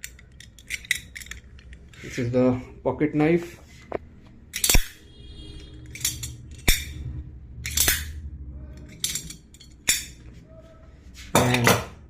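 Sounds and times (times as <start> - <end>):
knife blade metallic clicks and snaps: 4.5 - 5.0, 7.6 - 8.2.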